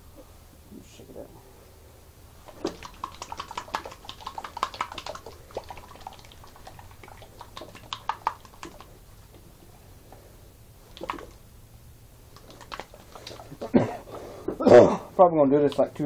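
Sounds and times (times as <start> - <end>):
oil sloshing in shaken bottle: 2.4 - 9.1, 10.8 - 11.4, 12.3 - 14.3.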